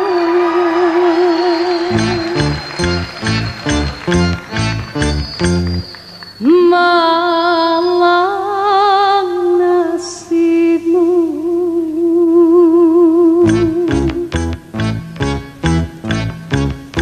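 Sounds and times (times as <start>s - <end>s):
woman singing wordless melody: 0.0s - 2.7s, 6.4s - 14.4s
plucked-string band music: 1.9s - 5.8s, 13.4s - 17.0s.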